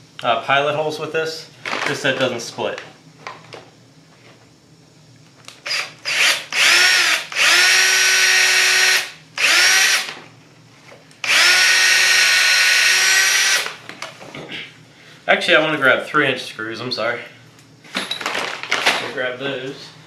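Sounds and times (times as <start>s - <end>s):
cordless drill boring into wood: 5.6s - 10.2s, 11.2s - 13.8s.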